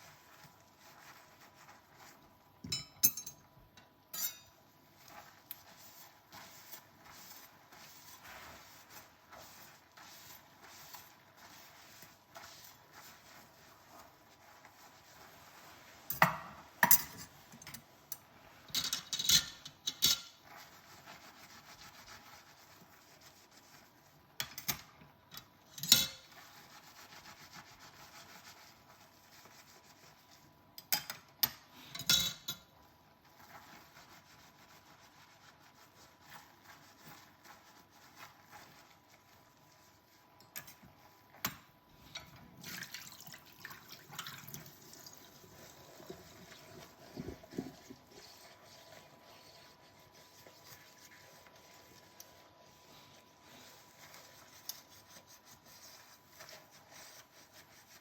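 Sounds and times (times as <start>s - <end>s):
scrubbing a dish: 0.0s - 58.0s
crockery clinking: 2.7s - 3.5s.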